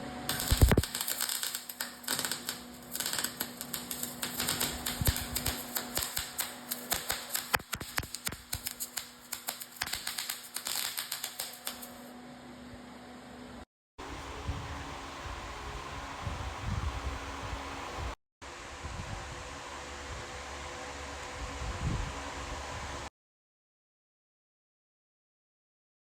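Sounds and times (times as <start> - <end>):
welding arc crackling: 0.3 - 12.1.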